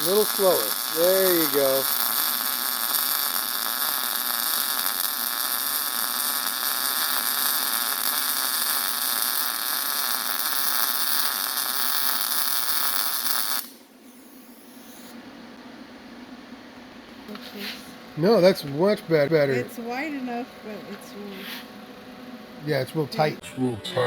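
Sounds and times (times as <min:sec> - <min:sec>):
welder arc on steel: 0:00.0 - 0:15.2.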